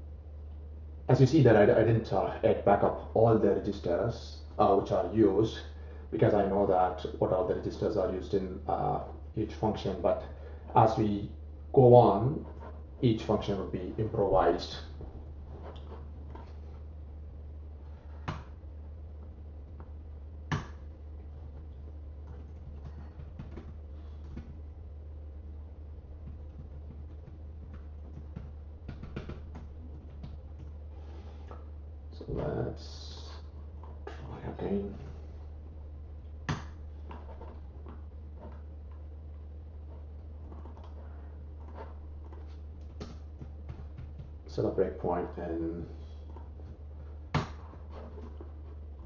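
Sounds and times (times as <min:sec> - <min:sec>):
steady low hum: 0:00.0 - 0:49.0
keyboard taps and mouse clicks: 0:22.3 - 0:24.5, 0:26.2 - 0:30.7.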